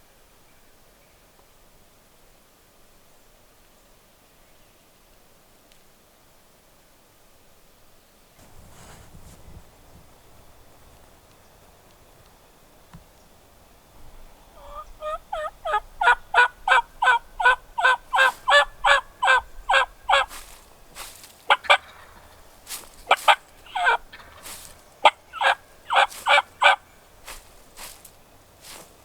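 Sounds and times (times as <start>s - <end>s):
turkey yelping: 14.4s - 28.9s.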